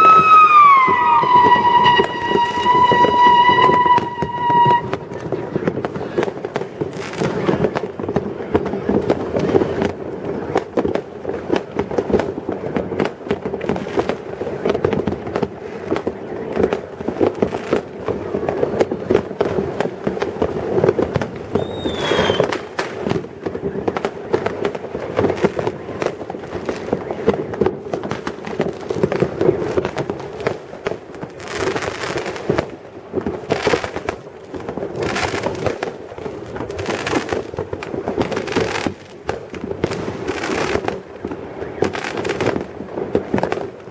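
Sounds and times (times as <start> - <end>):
falling firework whistle: 0.0 - 5.2, 21.4 - 22.9
fireworks crackling bangs: 0.0 - 43.9.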